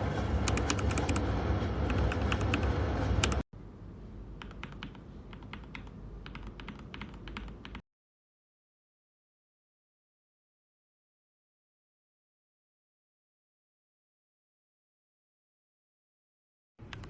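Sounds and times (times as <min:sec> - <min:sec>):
mechanical keyboard typing: 0:00.4 - 0:01.2, 0:01.9 - 0:03.4, 0:04.4 - 0:07.8.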